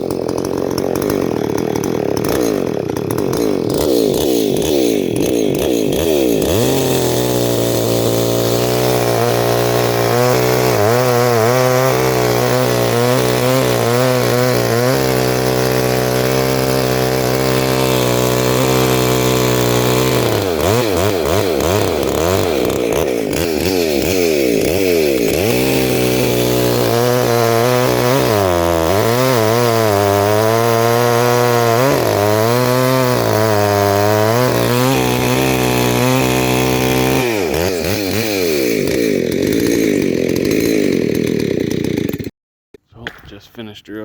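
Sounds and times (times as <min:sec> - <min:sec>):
chainsaw cutting wood: 0:00.0 - 0:42.4.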